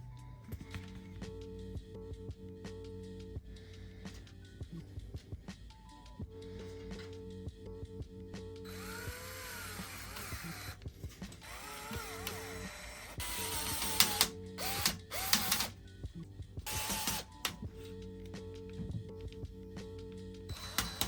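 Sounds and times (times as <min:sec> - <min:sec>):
background music: 0:00.0 - 0:21.0
electric screwdriver motor whine: 0:08.7 - 0:15.7, 0:16.7 - 0:17.6, 0:20.5 - 0:21.0.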